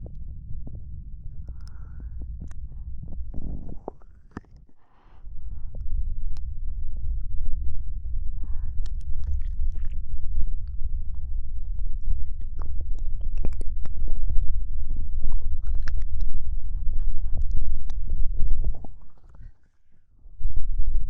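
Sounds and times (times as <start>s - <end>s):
steady low rumble: 0.0s - 21.0s
wet mouth clicks and smacks: 8.8s - 10.8s.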